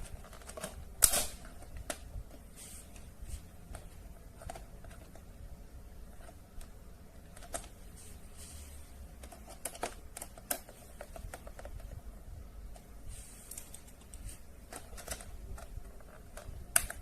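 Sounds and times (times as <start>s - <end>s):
low steady hum: 0.0s - 17.0s
plastic objects clicking: 9.2s - 12.0s.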